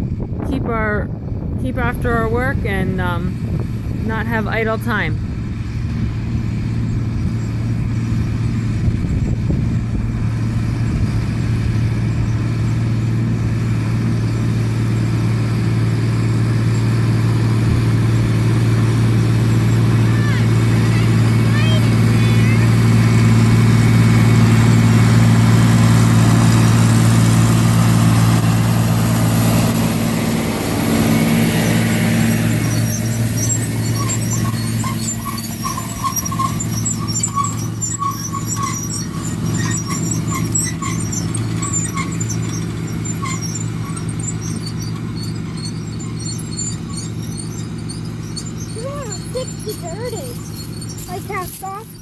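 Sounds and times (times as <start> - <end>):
farm machine engine running: 0.0 - 52.0
short high squeaks: 16.2 - 52.0.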